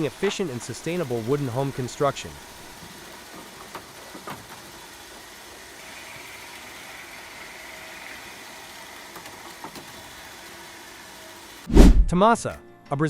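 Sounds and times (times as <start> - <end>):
sawmill machinery hum: 0.0 - 12.6.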